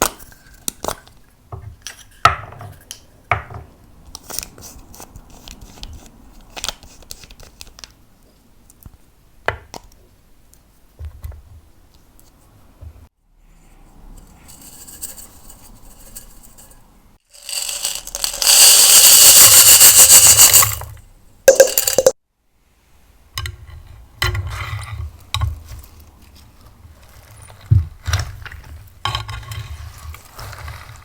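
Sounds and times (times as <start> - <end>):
slime scraping and crackling: 28.2 - 31.0.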